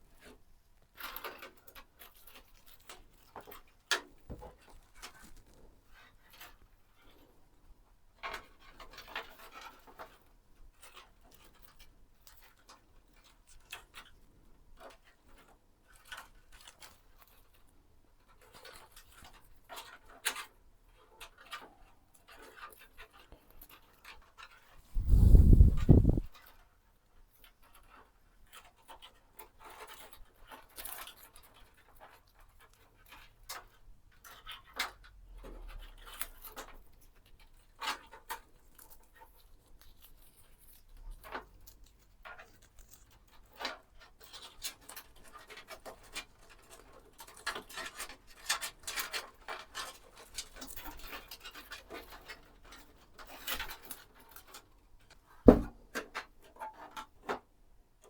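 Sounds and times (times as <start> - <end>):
sharp knock: 55.5 - 55.8.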